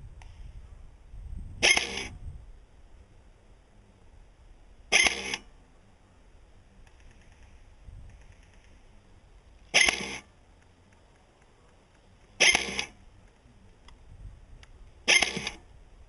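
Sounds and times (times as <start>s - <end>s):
airsoft gun shots: 1.6s - 2.1s, 4.9s - 5.4s, 9.7s - 10.2s, 12.4s - 13.0s, 15.1s - 15.6s.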